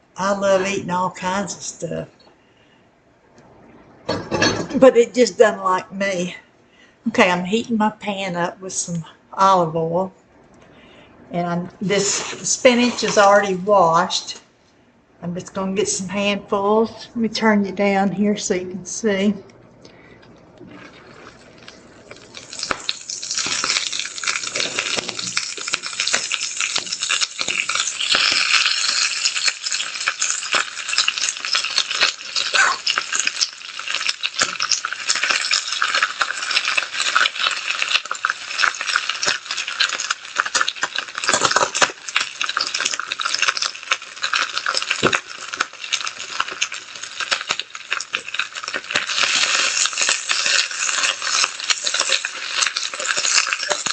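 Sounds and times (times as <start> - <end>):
spinach sizzling in frying pan: 11.9 - 13.6, 21.0 - 53.9.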